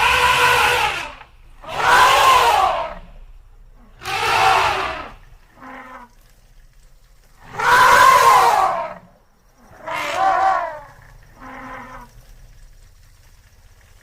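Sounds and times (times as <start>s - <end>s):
elephant calling: 0.0s - 3.1s, 3.8s - 6.1s, 7.4s - 12.1s.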